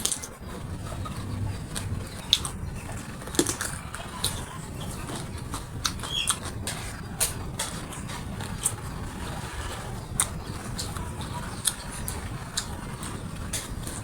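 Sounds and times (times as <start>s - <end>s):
low steady hum: 0.0s - 14.0s
chewing with mouth clicks: 3.3s - 8.8s, 10.1s - 14.0s.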